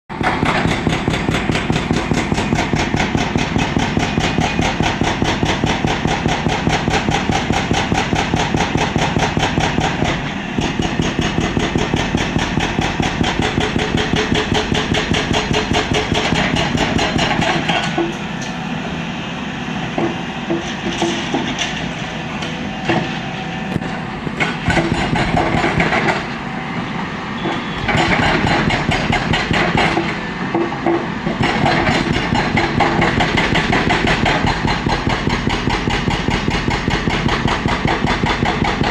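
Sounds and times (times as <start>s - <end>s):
hydraulic rock breaker hammering: 0.1s - 18.5s, 19.9s - 26.4s, 27.4s - 38.9s.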